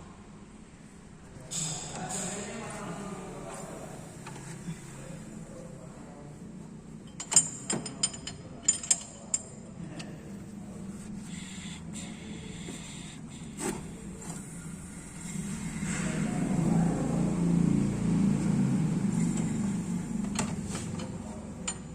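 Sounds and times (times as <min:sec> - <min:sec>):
steady low hum: 0:00.0 - 0:21.9
ring spanner clanking on bolt: 0:07.1 - 0:09.5.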